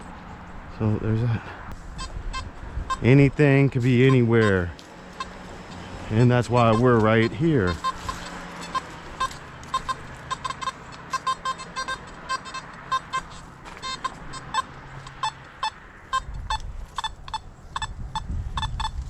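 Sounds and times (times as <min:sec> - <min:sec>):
metal detector beeps: 0:02.0 - 0:19.0.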